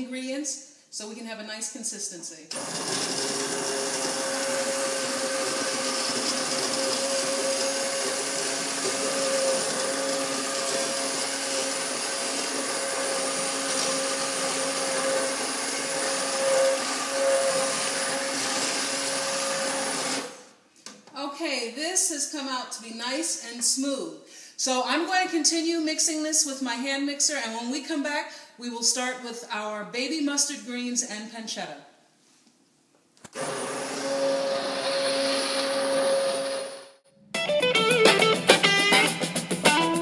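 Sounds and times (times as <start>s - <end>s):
electric hand mixer running: 2.5s - 20.4s, 33.4s - 37.0s.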